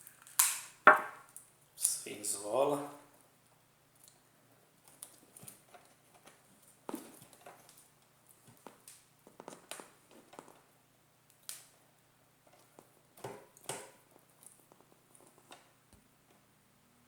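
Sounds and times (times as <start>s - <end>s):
faint clicks and taps: 4.8s - 10.7s, 12.5s - 16.4s.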